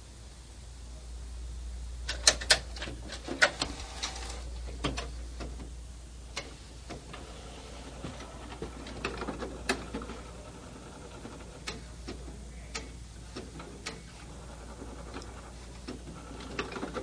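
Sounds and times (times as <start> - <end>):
low steady hum: 0.0 - 17.0
printer carriage clicking: 2.1 - 5.6, 8.1 - 10.2, 14.9 - 17.0.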